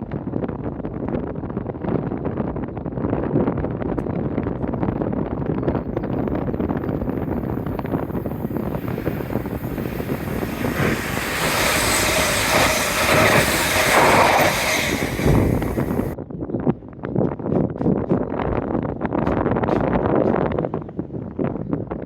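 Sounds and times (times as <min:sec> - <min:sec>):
wind on microphone: 0:00.0 - 0:22.0
passenger train passing: 0:06.2 - 0:16.2.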